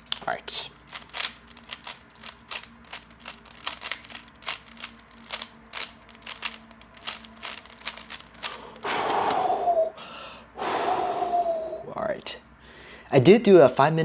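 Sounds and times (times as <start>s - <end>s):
puzzle cube clicking: 0.0s - 9.6s.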